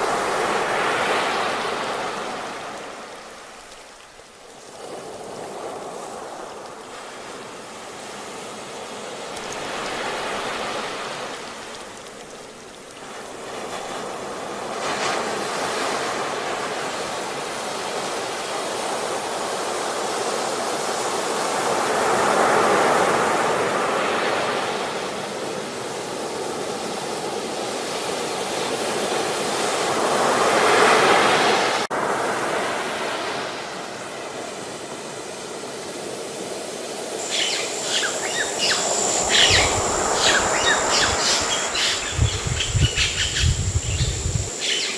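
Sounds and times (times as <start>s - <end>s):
ocean waves washing in: 0.0s - 44.9s
high rapid chirping: 37.2s - 44.9s.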